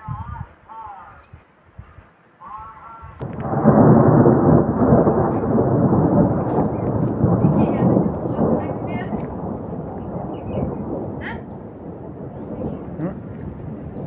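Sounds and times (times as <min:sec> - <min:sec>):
thunder rumbling: 0:03.2 - 0:14.0.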